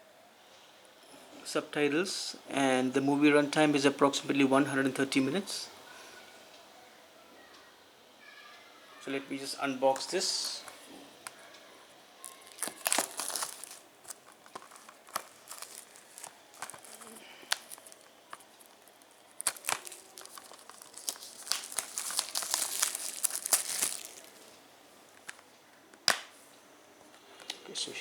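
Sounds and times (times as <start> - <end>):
shrink-wrap crinkling and tearing: 9.9 - 11.4, 12.2 - 25.4.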